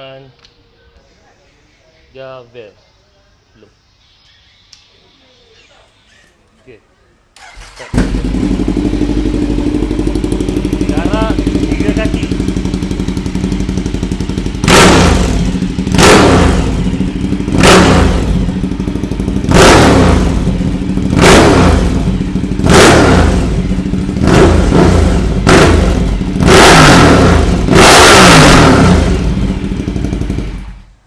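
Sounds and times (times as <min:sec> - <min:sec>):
motorcycle engine idling: 0:07.4 - 0:31.0
motorcycle engine revving: 0:07.4 - 0:31.0.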